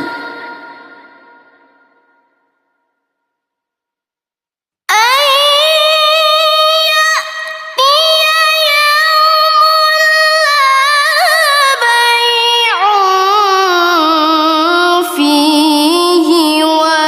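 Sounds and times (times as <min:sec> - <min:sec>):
high voice melodic recitation: 0:00.0 - 0:01.2, 0:04.9 - 0:17.0.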